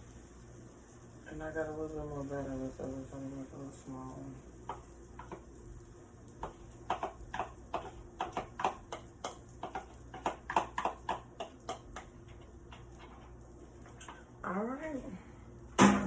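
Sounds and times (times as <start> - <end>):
utensil tapping cookware: 4.6 - 5.4, 6.4 - 14.2.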